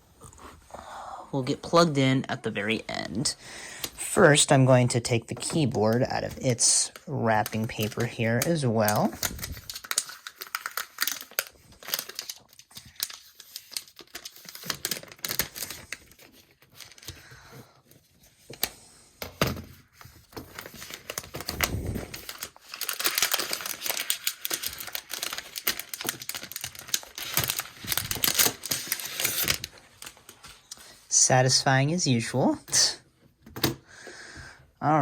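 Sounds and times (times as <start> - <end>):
paper crinkling and tearing: 6.2 - 17.3, 19.9 - 31.0.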